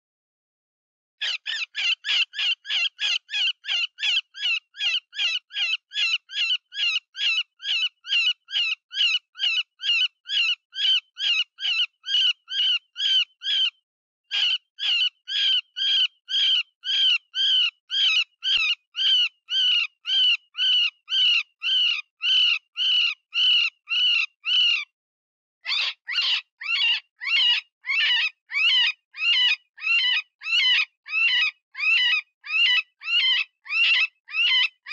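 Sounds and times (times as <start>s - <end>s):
rabbit distress squeals: 25.7s - 34.9s.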